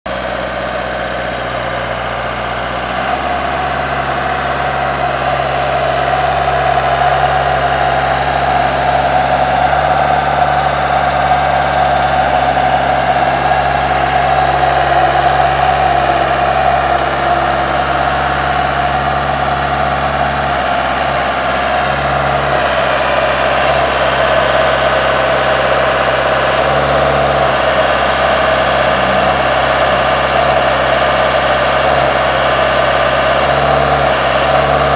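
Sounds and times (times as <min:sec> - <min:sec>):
heavy machine engine idling: 0:00.1 - 0:34.9.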